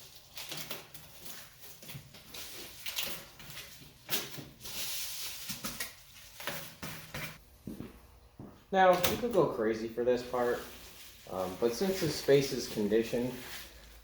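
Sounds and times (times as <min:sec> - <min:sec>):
insulation rustling: 0:08.8 - 0:14.0.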